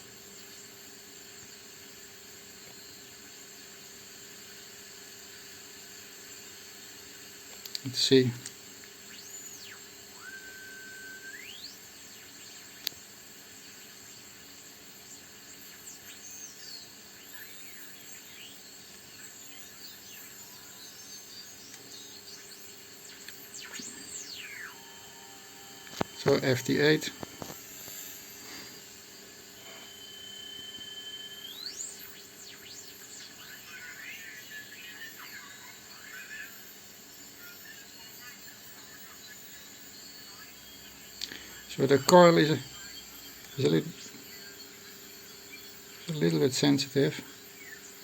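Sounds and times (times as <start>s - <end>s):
radio static hiss: 0.0s - 48.0s
gliding whistling tones: 9.6s - 11.8s.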